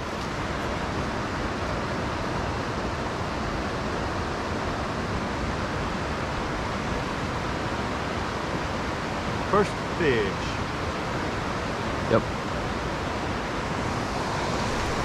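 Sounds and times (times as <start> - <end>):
creek water rushing: 0.0 - 15.0.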